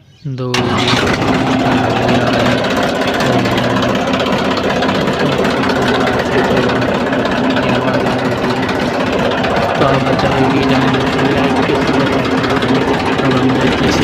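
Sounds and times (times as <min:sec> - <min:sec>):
tractor engine idling: 0:00.5 - 0:14.0.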